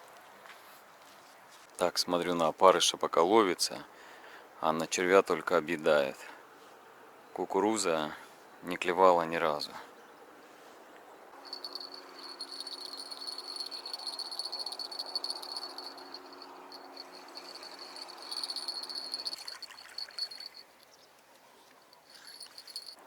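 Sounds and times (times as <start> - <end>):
cricket trilling: 11.4 - 20.9, 22.0 - 23.0.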